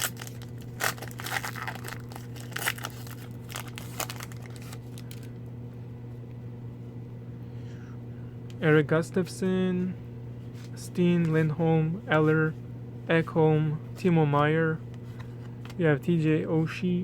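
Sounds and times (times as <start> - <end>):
wrapper being torn and crinkled: 0.0 - 5.3.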